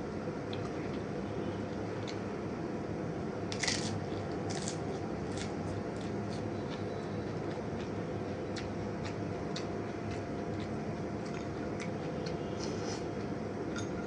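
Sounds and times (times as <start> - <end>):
steady low hum: 0.0 - 14.0
crunchy chewing: 3.5 - 13.9.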